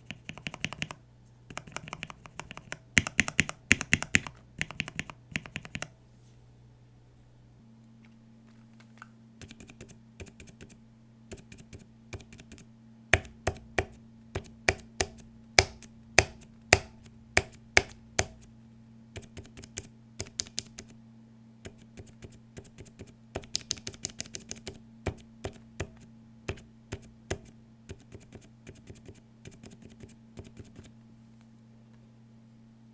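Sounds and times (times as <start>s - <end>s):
faint low hum: 0.0s - 32.9s
keyboard switch clacks: 23.4s - 26.6s.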